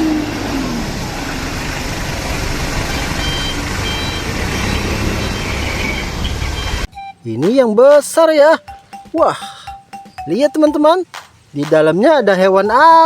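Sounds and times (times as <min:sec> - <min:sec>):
truck engine rumbling: 0:00.0 - 0:11.8.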